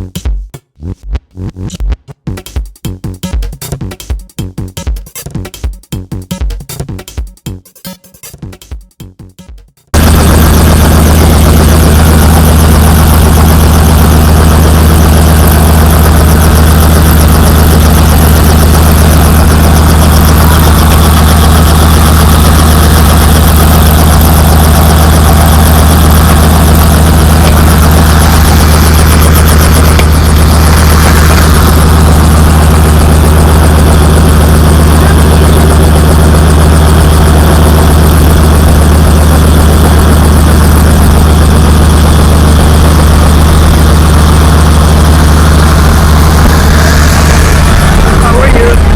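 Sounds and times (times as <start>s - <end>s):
helicopter droning: 10.0s - 48.9s.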